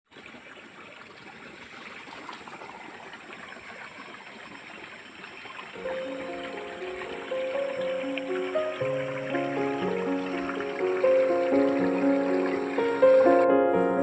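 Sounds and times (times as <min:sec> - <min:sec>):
background music sustained notes: 0:05.8 - 0:14.0.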